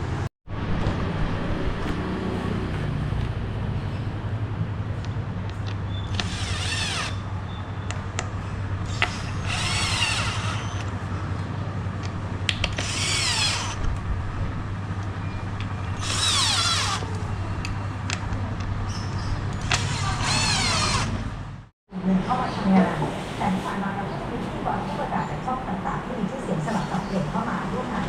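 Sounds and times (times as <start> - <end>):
electric power drill whining: 6.1 - 7.2, 8.8 - 10.9, 12.6 - 13.8, 16.0 - 17.2, 19.6 - 21.2.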